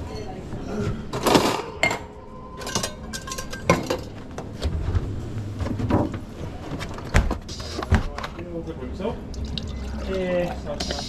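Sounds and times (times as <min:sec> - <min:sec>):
cups and dishes clinking: 0:01.8 - 0:04.2.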